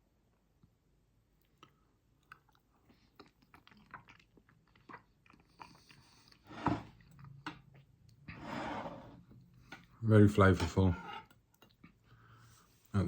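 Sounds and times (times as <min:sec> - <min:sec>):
person chewing food: 0:01.4 - 0:08.3, 0:11.3 - 0:12.7.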